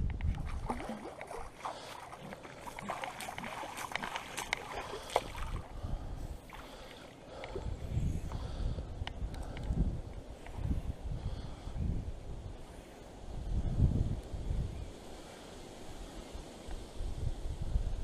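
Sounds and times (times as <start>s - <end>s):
water sloshing and splashing: 0.2s - 8.5s.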